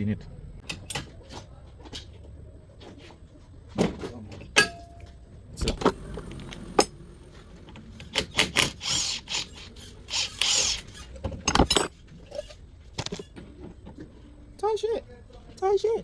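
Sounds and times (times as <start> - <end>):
hand tools clinking on metal: 4.5 - 5.2
rough metal scraping: 5.9 - 13.5.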